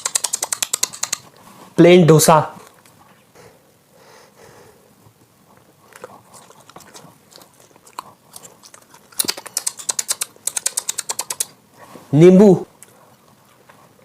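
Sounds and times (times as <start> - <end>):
biting and chewing food: 5.6 - 11.6.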